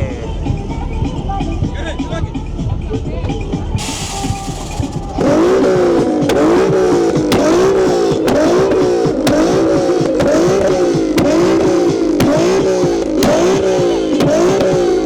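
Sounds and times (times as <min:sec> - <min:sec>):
car engine revving: 0:03.6 - 0:15.0
engine pops: 0:03.8 - 0:15.0.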